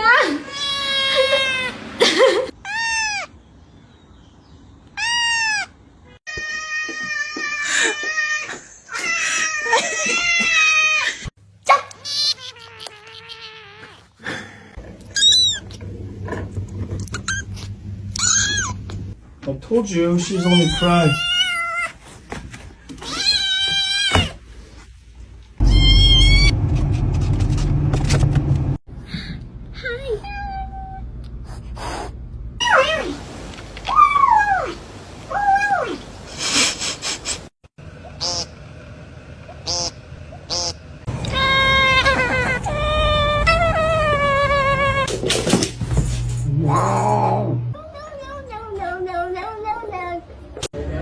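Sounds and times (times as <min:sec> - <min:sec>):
cat meowing: 0:12.1 - 0:14.1, 0:20.2 - 0:21.9, 0:25.6 - 0:26.5
loud low rumble: 0:25.6 - 0:30.0.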